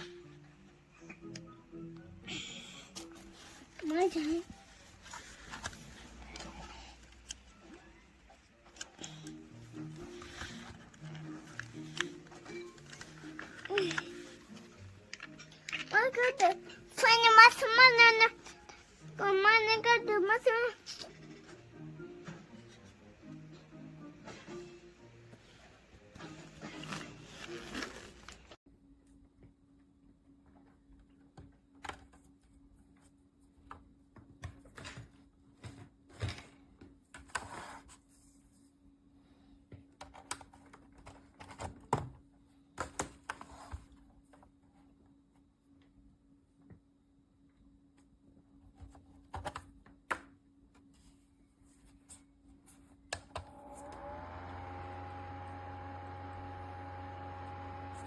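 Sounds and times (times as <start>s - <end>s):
small fan motor whirring: 53.5s - 58.0s.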